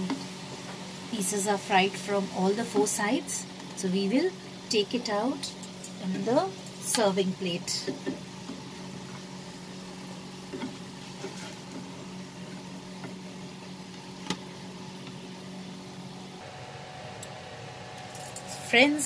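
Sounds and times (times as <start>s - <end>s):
bread sizzling in a pan: 0.0s - 18.0s.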